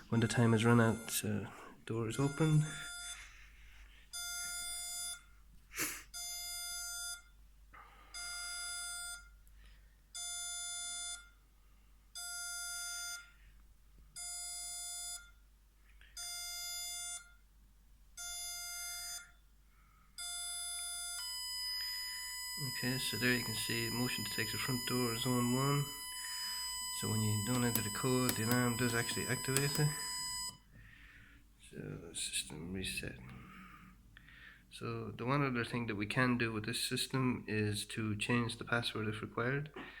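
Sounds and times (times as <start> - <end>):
alarm buzzer beeping: 0.0 - 1.4, 2.1 - 3.4, 4.2 - 5.3, 6.2 - 7.4, 8.1 - 9.4, 10.2 - 11.4, 12.2 - 13.4, 14.2 - 15.4, 16.2 - 17.4, 18.2 - 19.4, 20.2 - 30.6
steady high alarm tone: 0.0 - 3.5, 4.1 - 5.3, 8.1 - 9.4, 10.2 - 11.4, 12.2 - 13.4, 14.2 - 15.4, 16.2 - 17.4, 18.2 - 19.4, 20.1 - 30.7.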